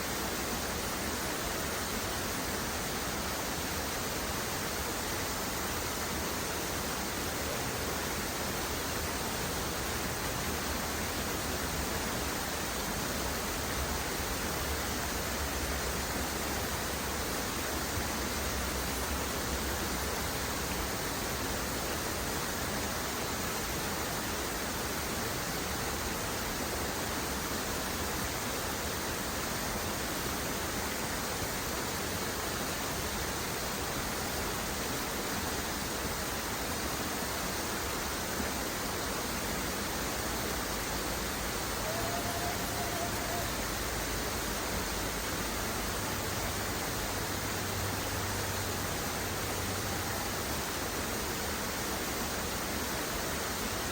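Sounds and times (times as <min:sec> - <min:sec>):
waterfall rushing: 0:00.0 - 0:53.9.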